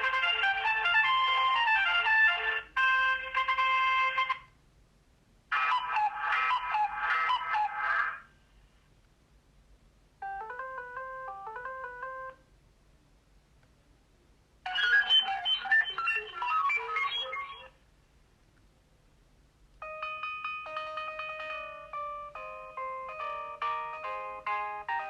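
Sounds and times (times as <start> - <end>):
mobile phone ringtone melodies: 0.0 - 4.3, 10.2 - 12.4, 19.8 - 25.0.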